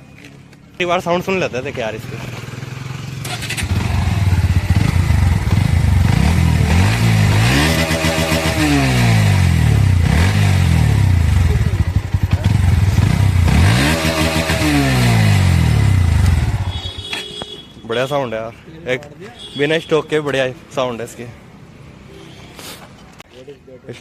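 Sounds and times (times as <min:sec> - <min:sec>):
motorcycle engine idling and revving: 0:00.0 - 0:17.6.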